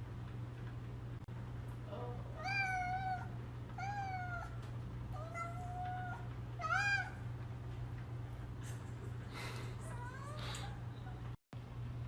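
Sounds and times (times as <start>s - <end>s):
cat meowing: 2.4s - 7.2s, 9.9s - 11.2s.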